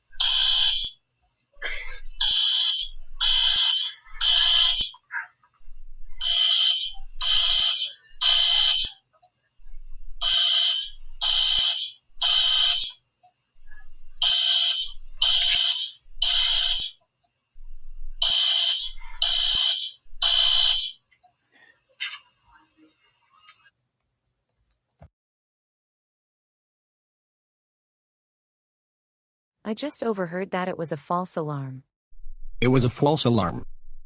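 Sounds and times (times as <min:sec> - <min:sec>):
fire alarm beeping: 0:00.1 - 0:01.0, 0:02.0 - 0:05.0, 0:05.7 - 0:09.0, 0:09.7 - 0:13.0, 0:13.6 - 0:17.0, 0:17.6 - 0:21.0.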